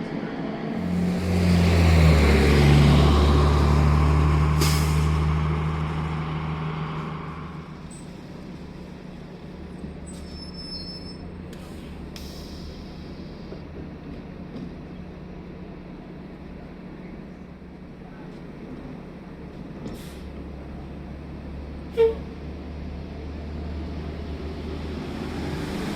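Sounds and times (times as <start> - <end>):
bus engine passing: 0.0 - 10.1, 12.8 - 25.9
air brakes hiss: 4.6 - 5.2, 11.5 - 13.6, 19.9 - 20.4.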